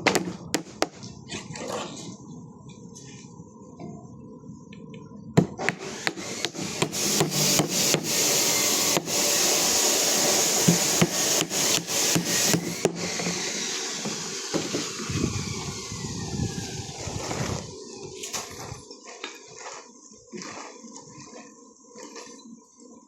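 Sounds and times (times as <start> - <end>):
tool rasping and scraping: 5.6 - 22.2.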